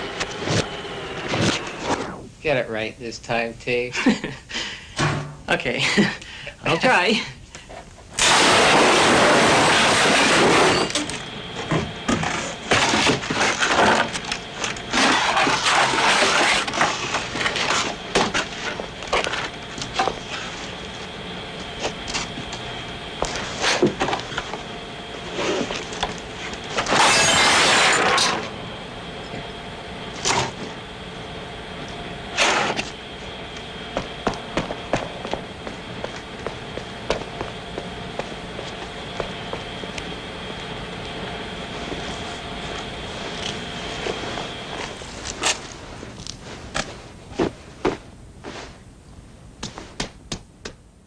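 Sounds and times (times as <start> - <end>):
crashing and breaking impacts: 8.2 - 10.9, 26.8 - 28.4.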